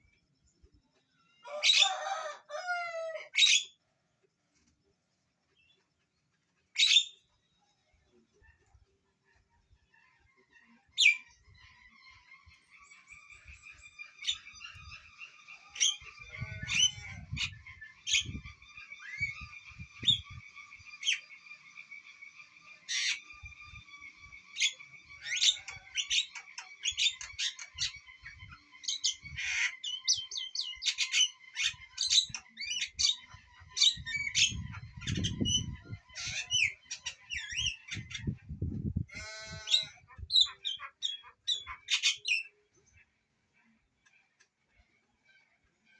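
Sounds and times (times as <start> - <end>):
bird harsh squawks and chattering: 6.8 - 7.2, 15.7 - 18.4, 22.9 - 23.3, 24.6 - 42.5.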